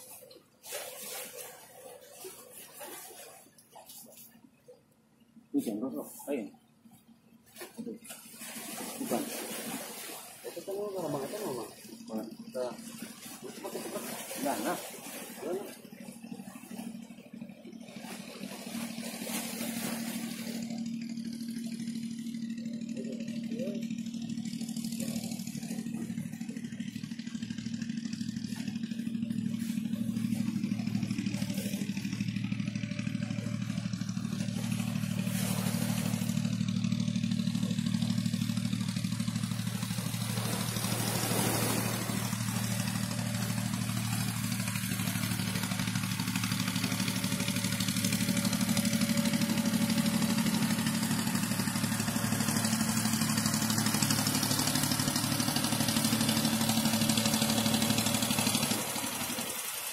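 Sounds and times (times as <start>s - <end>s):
boat engine running steadily: 0.0s - 59.9s.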